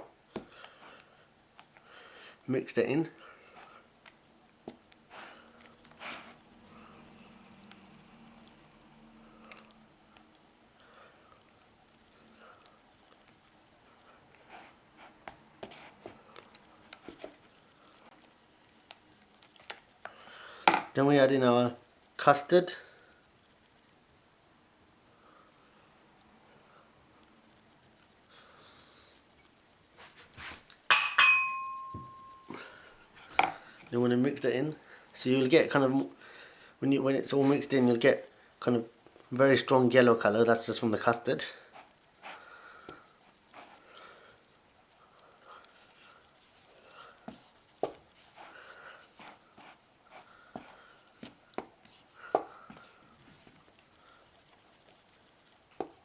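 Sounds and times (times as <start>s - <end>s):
batter stirred in mixing bowl: 2.6s - 20.2s, 39.4s - 56.0s
utensil striking ringing bowl: 30.9s - 32.6s.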